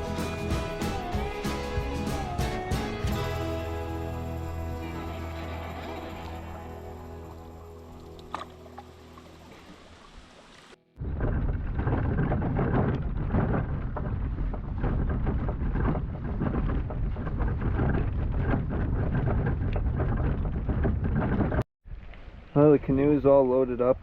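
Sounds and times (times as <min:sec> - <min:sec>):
background music: 0:00.0 - 0:09.5
rain: 0:04.7 - 0:10.8
wind rumbling on microphone: 0:05.0 - 0:24.0.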